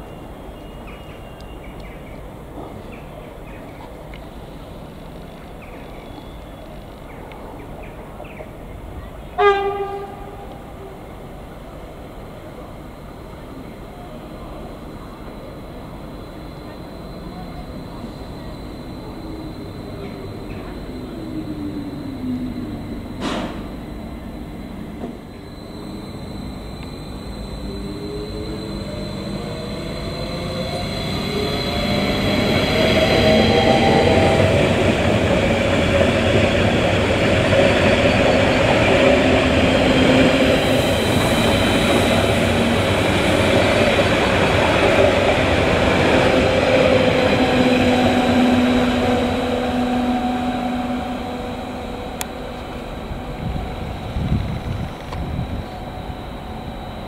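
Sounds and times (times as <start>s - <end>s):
train rumble and rail noise: 0.0s - 57.0s
rising whine: 15.9s - 57.0s.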